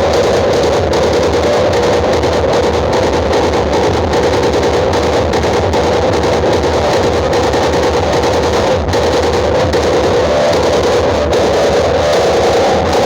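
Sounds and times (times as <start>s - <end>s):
loud music with drums: 0.0s - 13.0s.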